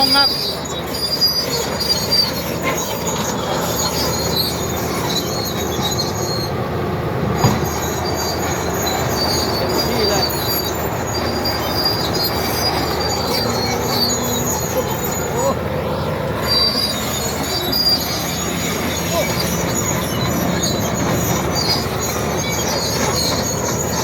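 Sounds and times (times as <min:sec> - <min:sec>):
bulldozer diesel engine running: 0:00.0 - 0:24.0
steel tracks squealing and clanking: 0:00.0 - 0:24.0.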